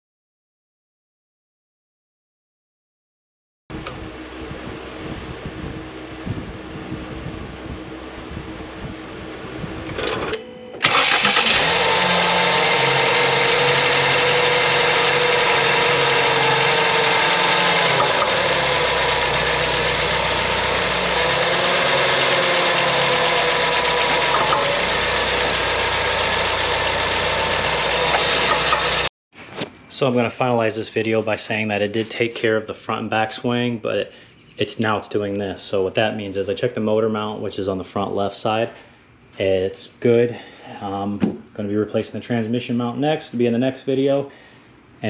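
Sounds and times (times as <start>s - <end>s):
car engine running: 3.7s - 10.2s, 10.8s - 29.1s.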